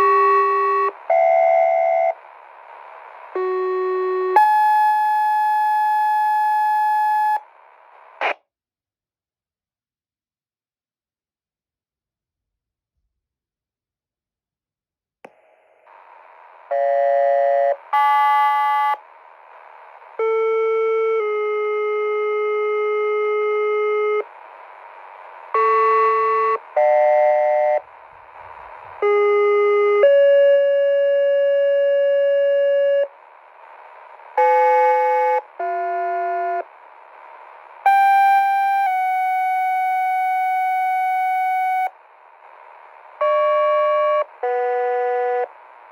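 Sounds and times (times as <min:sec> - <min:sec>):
radio hiss: 0:00.0 - 0:08.4, 0:15.3 - 0:21.5, 0:23.0 - 0:30.0, 0:30.6 - 0:44.5
radio channel click: 0:07.9 - 0:08.4.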